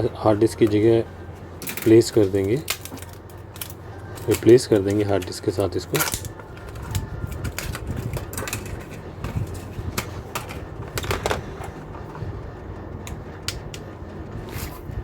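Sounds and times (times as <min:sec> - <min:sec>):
low hum: 0:00.0 - 0:15.0
hands handling small parts: 0:01.6 - 0:12.2.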